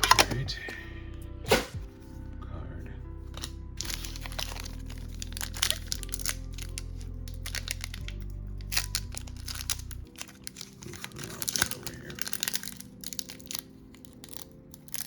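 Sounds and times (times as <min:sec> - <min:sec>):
background music with slow bass: 0:00.0 - 0:15.0
cards being handled: 0:03.2 - 0:15.0
foil wrapper crinkling and tearing: 0:03.3 - 0:15.0.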